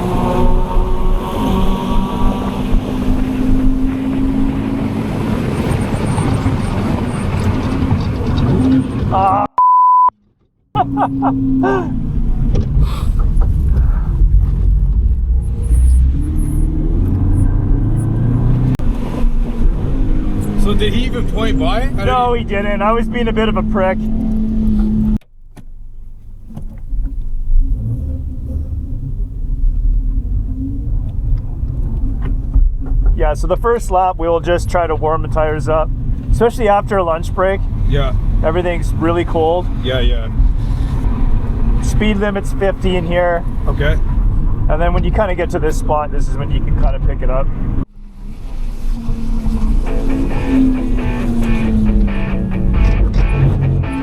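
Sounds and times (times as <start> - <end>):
car engine running: 0.0 - 9.4, 10.8 - 54.0
tyre and road noise: 0.0 - 9.5, 10.2 - 54.0
short steady beep: 9.6 - 10.1.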